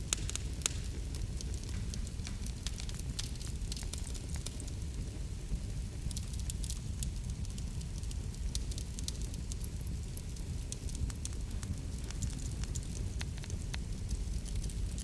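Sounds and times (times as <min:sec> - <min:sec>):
low rumble of flames: 0:00.0 - 0:15.0
wood fire crackling and popping: 0:00.0 - 0:15.0.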